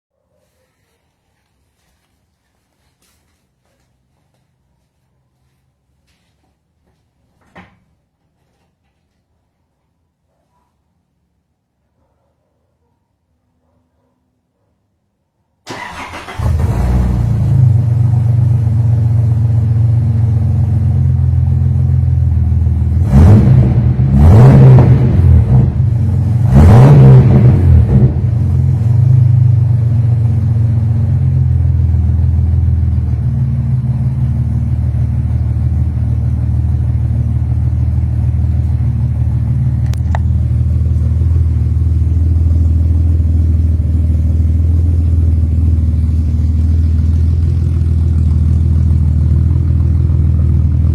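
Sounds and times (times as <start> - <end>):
engine revving: 15.7 - 19.6, 22.7 - 31.9
car engine idling: 15.7 - 23.0, 27.8 - 50.9.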